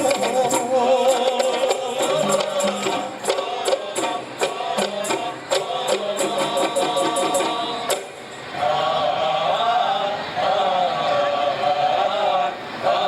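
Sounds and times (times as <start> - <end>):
frame drums: 0.0 - 8.5
tambourine jingling: 0.0 - 8.5
sustained pitched accompaniment: 0.0 - 12.5.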